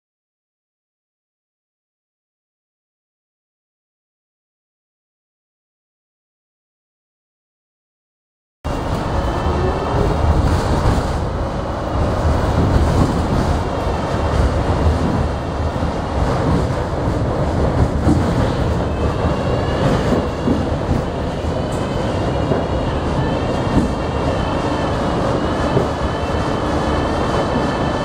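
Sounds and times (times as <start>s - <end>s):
subway car rumbling on rails: 8.7s - 28.0s.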